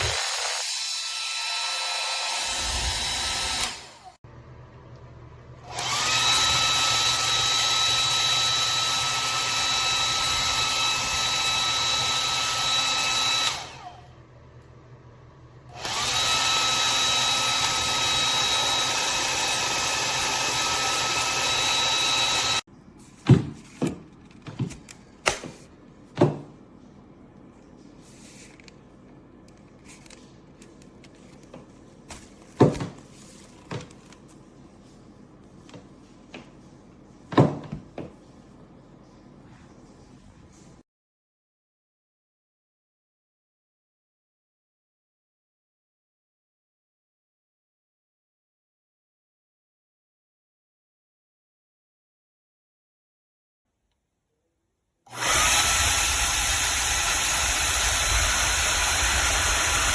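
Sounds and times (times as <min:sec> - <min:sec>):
hair dryer running: 0:00.0 - 0:04.2, 0:05.6 - 0:14.1, 0:15.7 - 0:22.7, 0:55.1 - 0:59.9.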